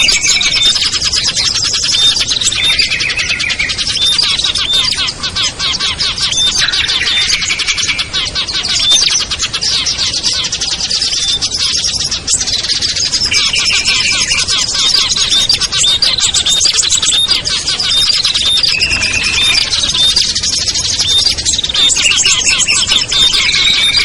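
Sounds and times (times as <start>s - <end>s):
songbirds chirping and trilling: 0.0s - 24.0s.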